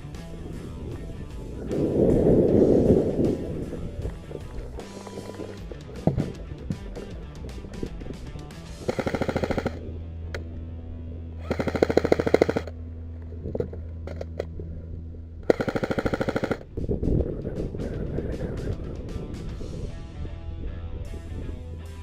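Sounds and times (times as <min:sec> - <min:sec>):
airsoft gun automatic bursts: 0:08.8 - 0:09.8, 0:11.4 - 0:12.8, 0:13.6 - 0:14.4, 0:15.5 - 0:16.7.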